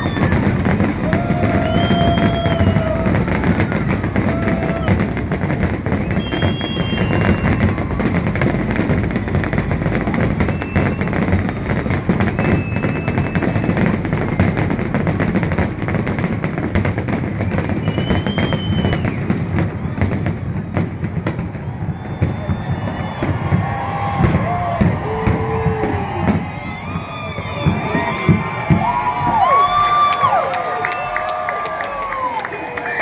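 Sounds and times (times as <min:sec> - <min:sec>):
firework whistles: 0:00.0 - 0:05.1, 0:05.8 - 0:09.0, 0:10.0 - 0:15.2, 0:17.3 - 0:20.1, 0:21.4 - 0:30.3
fireworks bangs and crackles: 0:00.0 - 0:33.0.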